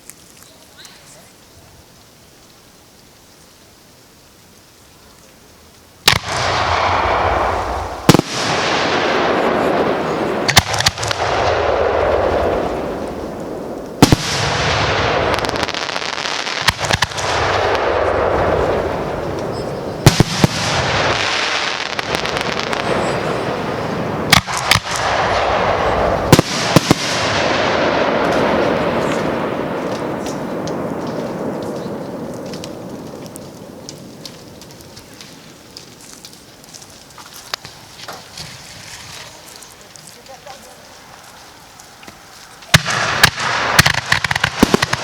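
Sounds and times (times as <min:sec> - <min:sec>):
fireworks crackle and echo: 0:00.0 - 0:45.0
fireworks bangs: 0:06.0 - 0:45.0.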